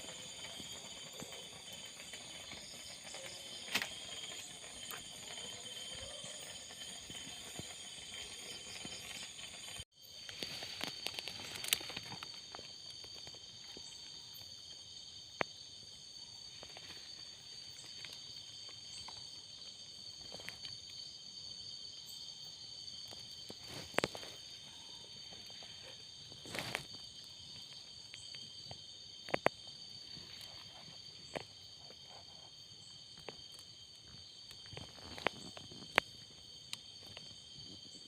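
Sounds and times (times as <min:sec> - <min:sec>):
crickets trilling: 0:00.0 - 0:38.0.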